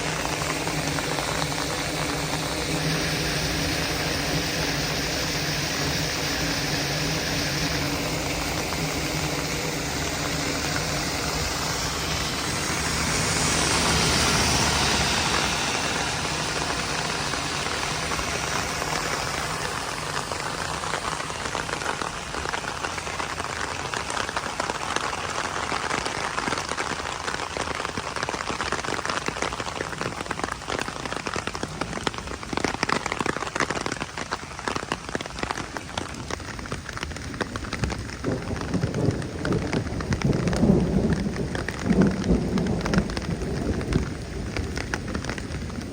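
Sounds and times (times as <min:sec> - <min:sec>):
low steady hum: 0:00.0 - 0:25.4
heavy rain: 0:00.0 - 0:45.9
raindrops hitting a surface: 0:00.0 - 0:45.9.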